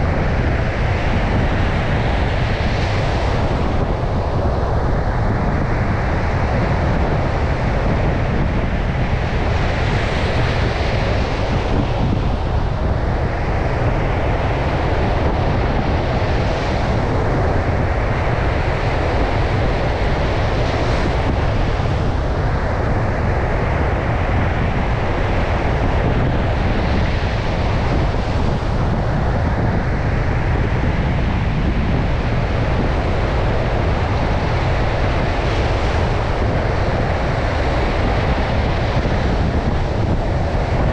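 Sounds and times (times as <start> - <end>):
surf breaking on a beach: 0.0 - 40.9
wind rumbling on microphone: 0.0 - 40.9.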